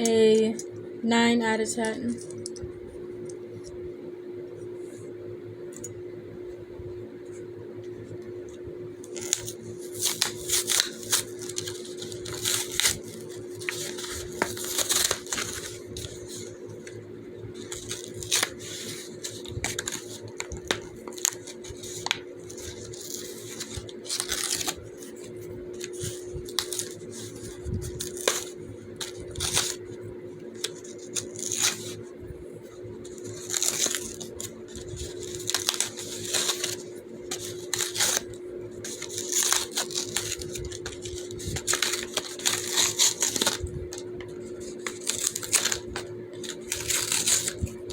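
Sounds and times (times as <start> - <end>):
crinkly rustles: 9.1 - 17.0, 17.6 - 32.1, 32.7 - 47.9.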